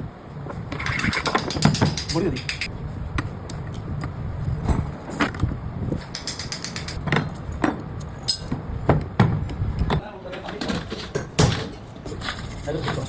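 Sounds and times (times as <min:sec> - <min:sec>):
steady low hum: 0:00.0 - 0:13.0
ratchet-like creaking: 0:00.7 - 0:02.7, 0:03.5 - 0:08.5
metal clicks and knocks of tools: 0:00.8 - 0:02.7, 0:05.1 - 0:10.0.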